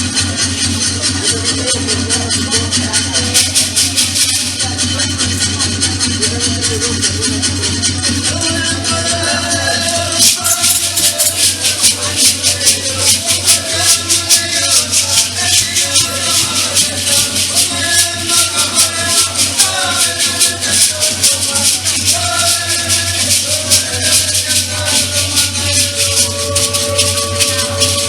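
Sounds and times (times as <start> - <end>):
latin music: 0.0 - 28.0
maracas shaking: 0.0 - 28.0.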